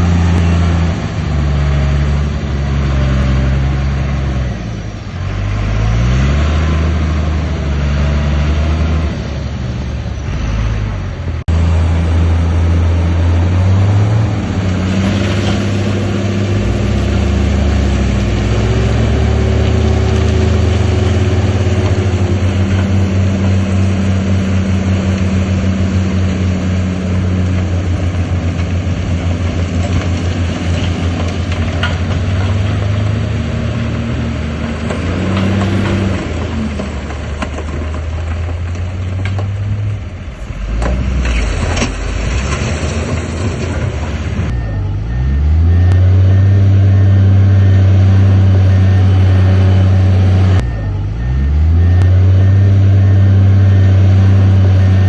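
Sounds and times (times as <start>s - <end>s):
engine revving up: 0.0s - 9.4s, 10.2s - 26.0s, 44.2s - 55.0s
steady engine drone: 0.0s - 38.0s, 40.1s - 55.0s
heavy machine diesel engines: 0.0s - 55.0s.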